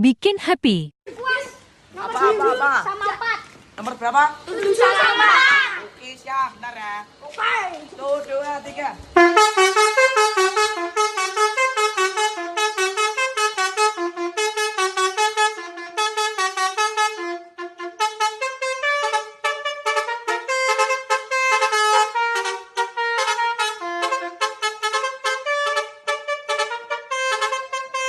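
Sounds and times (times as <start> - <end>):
bus horn playing a melody: 9.2 - 28.0.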